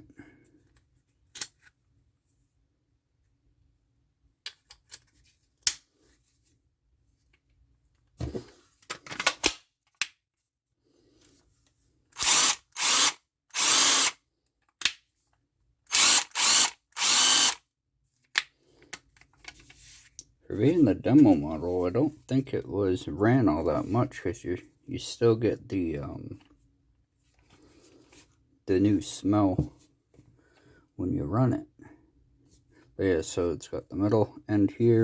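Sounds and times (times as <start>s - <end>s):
cordless impact driver running: 12.2s - 14.2s, 15.9s - 17.6s.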